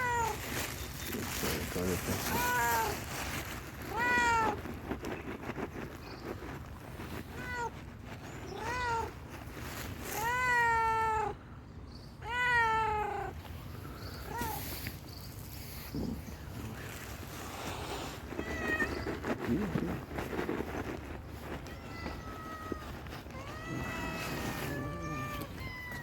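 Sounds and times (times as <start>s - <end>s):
cat meowing: 2.2s - 3.0s, 3.9s - 4.6s, 7.4s - 7.7s, 8.5s - 9.2s, 10.1s - 11.4s, 12.2s - 13.4s, 14.2s - 14.9s, 18.2s - 19.2s, 21.6s - 26.0s.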